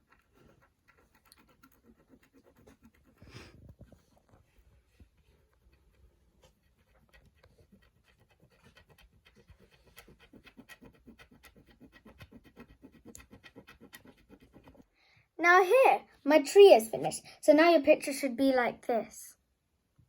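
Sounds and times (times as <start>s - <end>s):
stylus scraping scratch paper: 0.0s - 4.2s, 5.5s - 14.9s.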